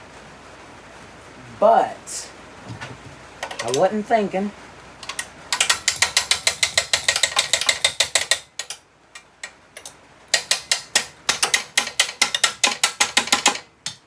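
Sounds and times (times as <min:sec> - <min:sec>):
ratchet wrench clicking: 0:05.0 - 0:14.0.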